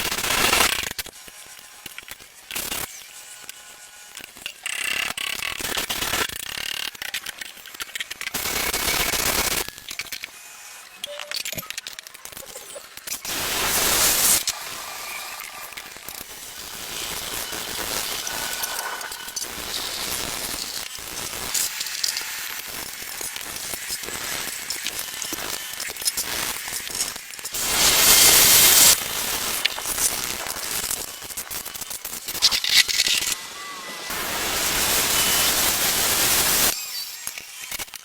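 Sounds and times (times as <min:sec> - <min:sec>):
crackling and rattling: 0:11.4 - 0:33.4
loud spraying hiss: 0:13.2 - 0:31.4, 0:33.5 - 0:36.7.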